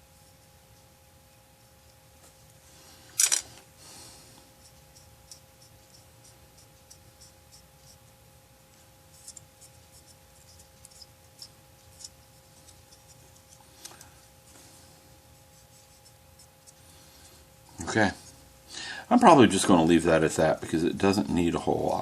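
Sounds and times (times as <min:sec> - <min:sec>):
faint steady hum: 0:00.0 - 0:22.0
faint scratches on plastic: 0:15.3 - 0:16.9.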